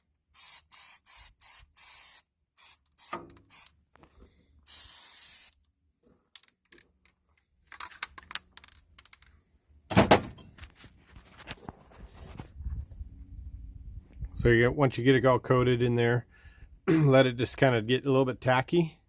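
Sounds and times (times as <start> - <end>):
aerosol can spraying: 0.3 - 3.7, 4.6 - 5.6
knocks and rattles of handling: 6.0 - 12.5.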